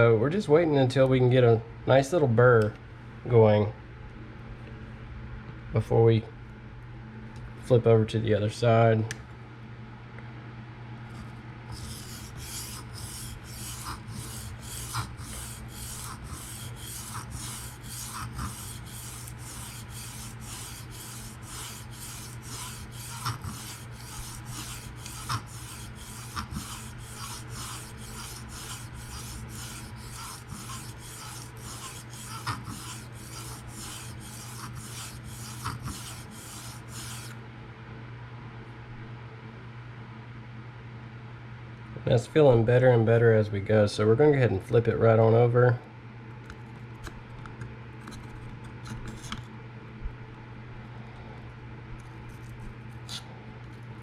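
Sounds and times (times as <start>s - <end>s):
steady low hum: 0.0s - 54.0s
knife scraping on sharpening plate: 11.7s - 37.3s.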